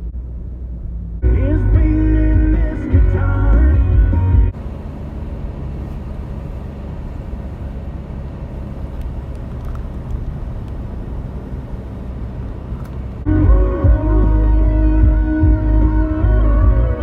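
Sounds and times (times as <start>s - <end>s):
car road and engine noise: 0.0s - 17.0s.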